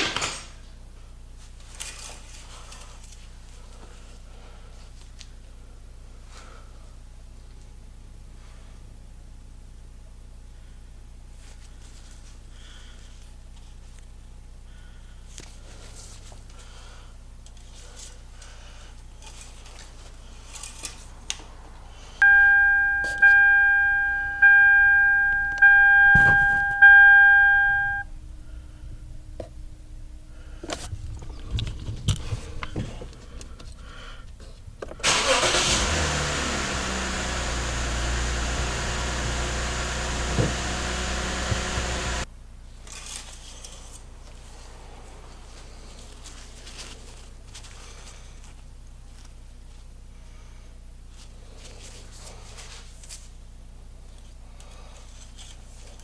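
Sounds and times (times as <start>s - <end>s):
car warning chime dinging: 22.2s - 28.1s, 35.1s - 42.2s
car engine starting and idling: 22.2s - 31.4s, 35.0s - 42.3s.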